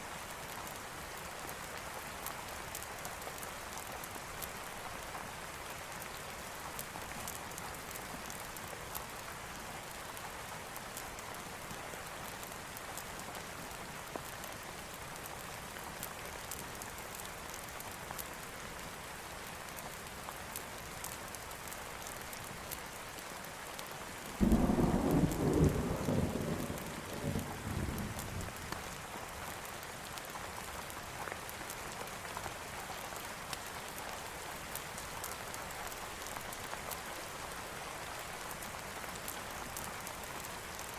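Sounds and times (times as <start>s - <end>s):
steady rain falling: 0.0s - 40.9s
thunderclap rumbling: 24.4s - 28.5s.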